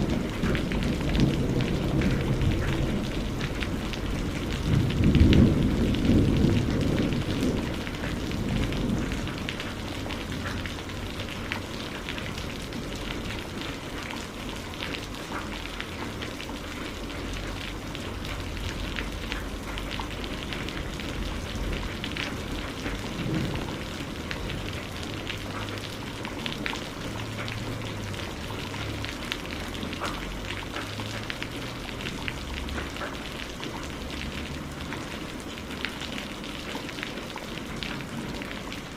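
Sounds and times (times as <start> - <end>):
thunder rumbling: 0.0 - 14.4, 17.4 - 30.5
steady rain: 0.0 - 38.9.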